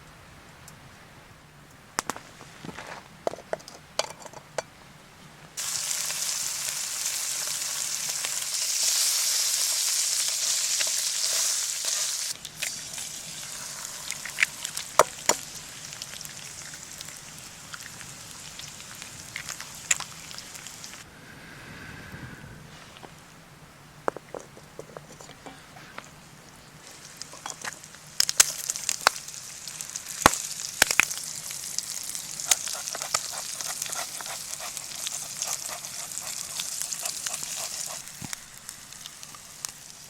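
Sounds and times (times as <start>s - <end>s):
food sizzling in a hot pan: 5.6s - 21.0s, 27.0s - 40.0s.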